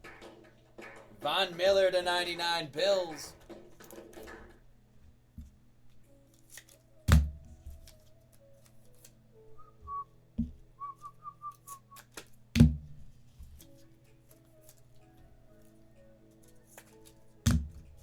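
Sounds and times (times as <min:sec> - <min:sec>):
faint background music: 0:00.0 - 0:18.0
whistled notes: 0:09.5 - 0:10.2, 0:10.8 - 0:12.1.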